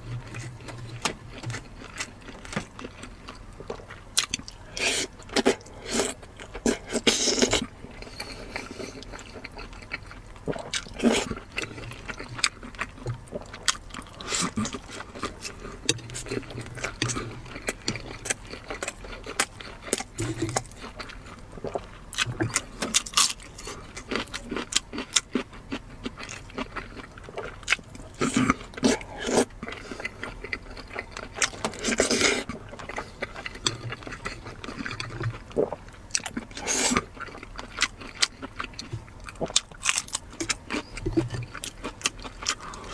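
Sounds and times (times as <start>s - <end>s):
person chewing food: 0.0s - 42.9s.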